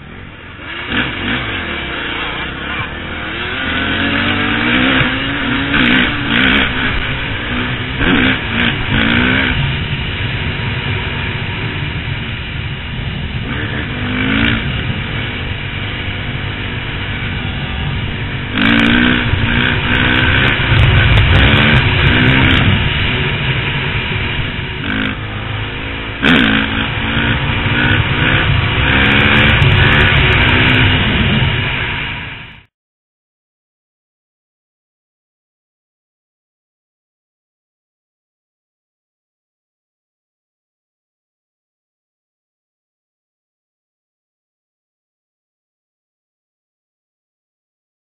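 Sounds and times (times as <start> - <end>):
off-road engine revving: 0.0 - 32.6
steady low rumble: 0.0 - 32.6.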